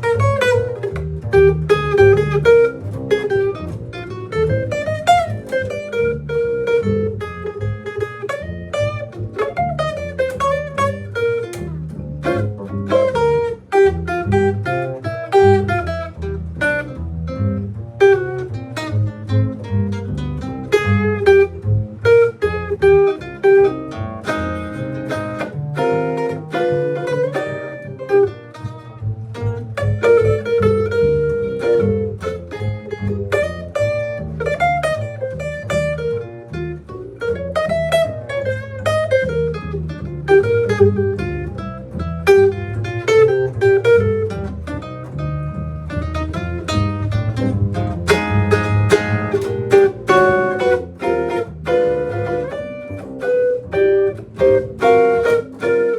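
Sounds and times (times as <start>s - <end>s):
bass line: 0.0s - 55.9s
guitar: 0.0s - 55.9s
sliding lead melody: 0.0s - 55.9s
band playing instrumental: 46.3s - 55.9s.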